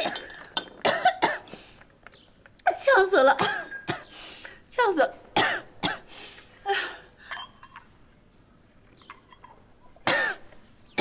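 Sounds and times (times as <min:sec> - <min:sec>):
woman coughing: 0:00.0 - 0:01.5, 0:03.4 - 0:04.1, 0:05.4 - 0:06.1, 0:10.1 - 0:10.4
dishes and cutlery clinking: 0:07.3 - 0:07.9, 0:09.0 - 0:10.4.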